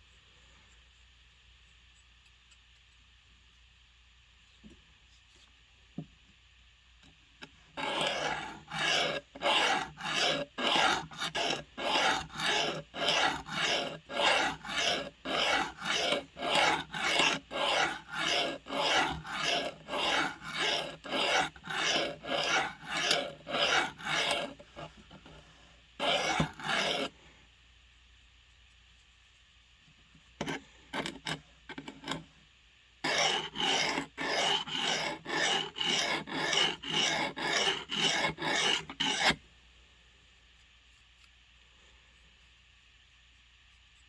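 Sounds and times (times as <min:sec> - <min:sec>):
blade sharpening rasps: 0:07.8 - 0:24.6, 0:26.0 - 0:27.1, 0:33.1 - 0:39.4.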